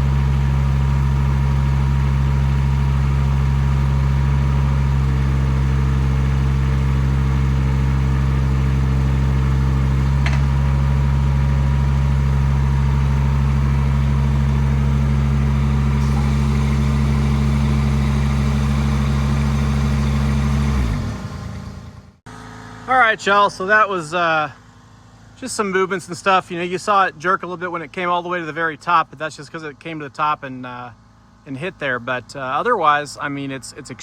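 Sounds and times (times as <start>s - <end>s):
excavator engine running: 0.0s - 26.9s
higher hydraulic hum: 7.6s - 25.8s.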